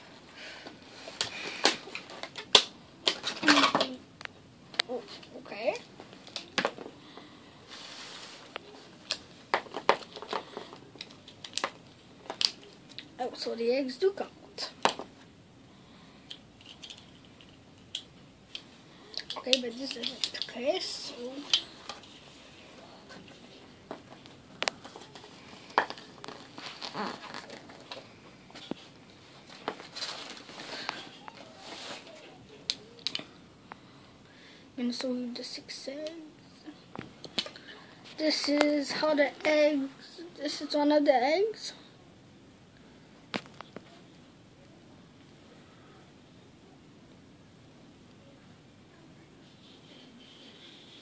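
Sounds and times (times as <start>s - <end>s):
soft rustle: 7.6s - 9.0s, 19.7s - 32.4s
plastic toy pieces clicking: 16.3s - 18.6s.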